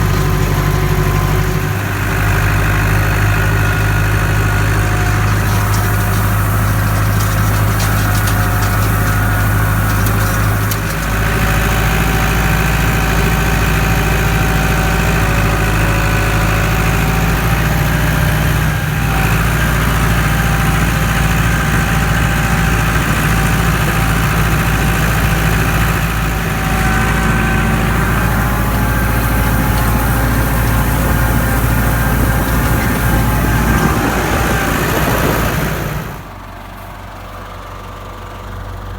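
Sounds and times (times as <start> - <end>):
tractor engine running: 0.0 - 38.9.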